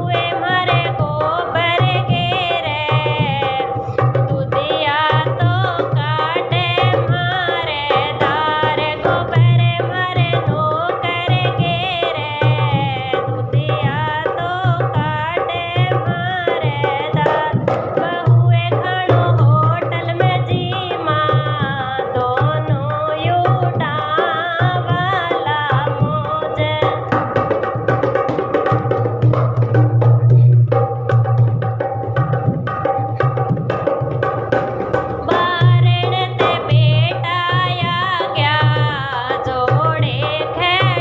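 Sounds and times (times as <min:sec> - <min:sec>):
hand drum beat: 0:00.0 - 0:41.0.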